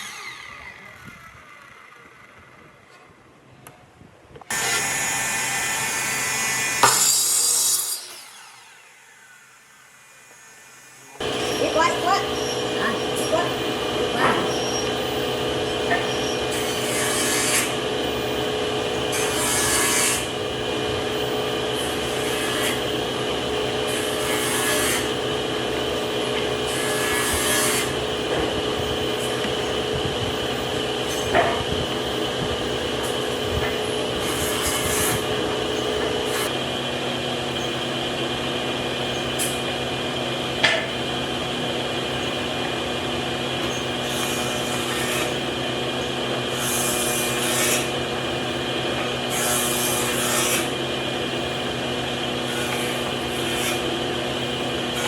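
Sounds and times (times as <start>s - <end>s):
machine droning: 11.0s - 55.0s.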